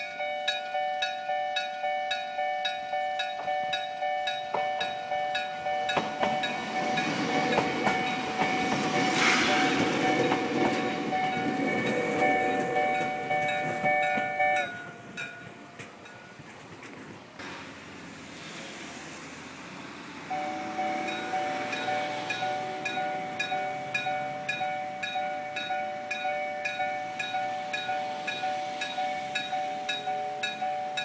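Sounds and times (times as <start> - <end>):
level-crossing bell ringing: 0.0 - 16.4, 20.3 - 31.0
train rumbling past: 0.0 - 31.0.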